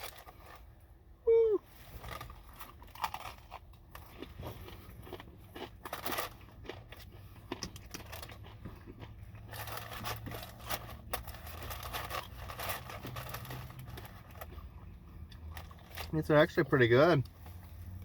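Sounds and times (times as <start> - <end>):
crunching of food being chewed: 0.0 - 18.0
paper packaging crinkling: 9.5 - 14.6.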